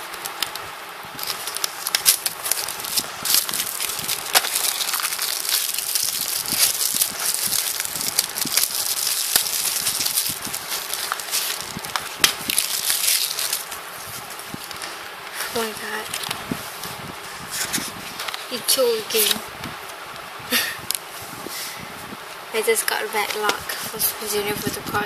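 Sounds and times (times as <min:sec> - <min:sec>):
plastic packaging crinkling: 0:00.0 - 0:19.5.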